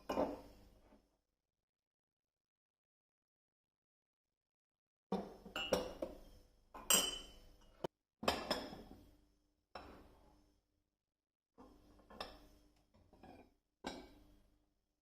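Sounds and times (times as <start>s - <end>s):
dishes and utensils clinking: 5.2s - 6.2s, 6.8s - 7.5s.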